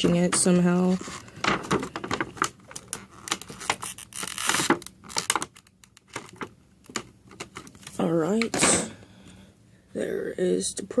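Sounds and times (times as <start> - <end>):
packaging rustle: 0.8 - 8.0.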